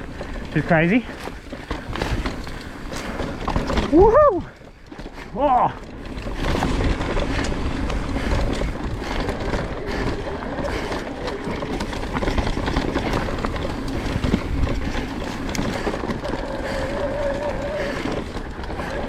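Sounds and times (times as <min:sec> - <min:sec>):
bike tyres on dirt trail: 0:00.0 - 0:19.0
knocks and rattles over ground: 0:00.0 - 0:19.0
wind rumble on microphone: 0:05.8 - 0:19.0.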